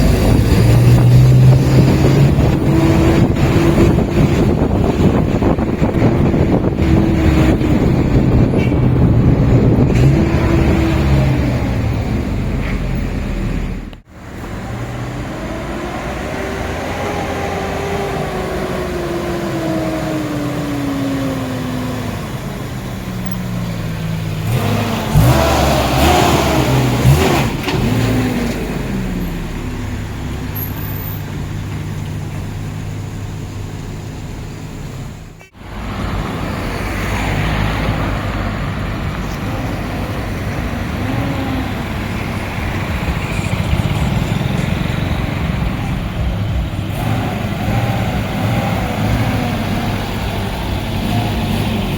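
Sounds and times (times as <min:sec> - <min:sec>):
vehicle engine running: 0:00.0 - 0:18.8, 0:38.3 - 0:51.9
road noise: 0:00.0 - 0:51.9.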